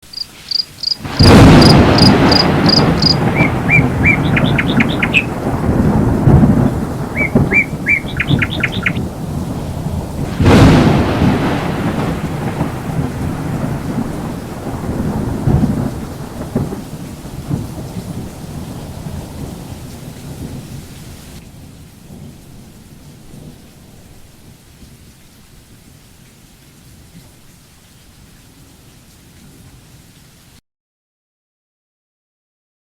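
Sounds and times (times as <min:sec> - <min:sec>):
rain hiss: 0:00.0 - 0:30.6
high chirps: 0:00.1 - 0:05.4, 0:07.1 - 0:09.0
thunder rumbling: 0:00.5 - 0:24.5.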